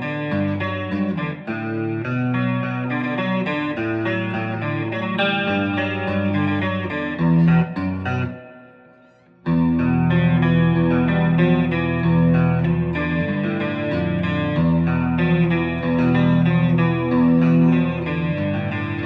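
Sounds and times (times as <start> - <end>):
clean electric guitar playing: 0.0 - 19.0.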